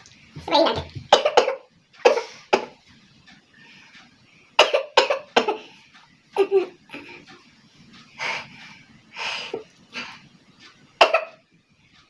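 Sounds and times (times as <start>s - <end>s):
woman coughing: 1.1s - 2.7s.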